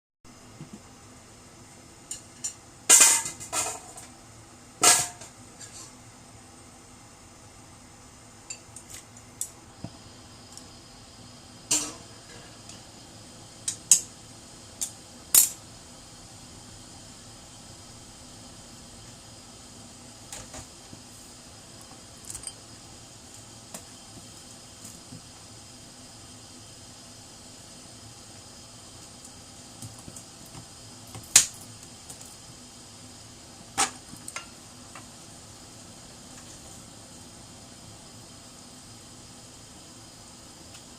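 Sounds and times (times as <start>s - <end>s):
steady hiss: 0.3s - 40.9s.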